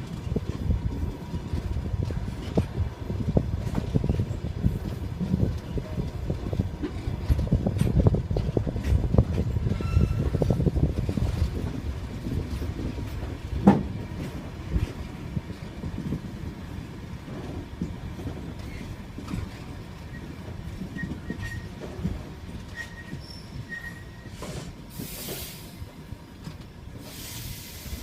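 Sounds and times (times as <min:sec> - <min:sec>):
train wheels clattering over rails: 0:00.0 - 0:28.0
faint wheel squeal: 0:09.6 - 0:10.7, 0:20.0 - 0:21.8, 0:22.7 - 0:24.7.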